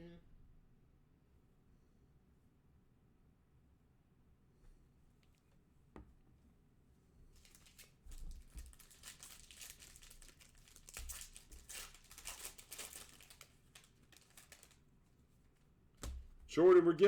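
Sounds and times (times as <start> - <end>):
wrapper crinkling and tearing: 7.4 - 14.9.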